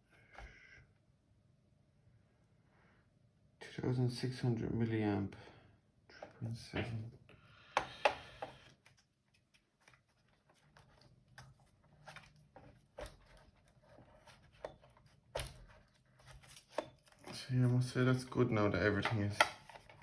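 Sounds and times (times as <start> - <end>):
plastic parts clicking and knocking: 18.8 - 20.0.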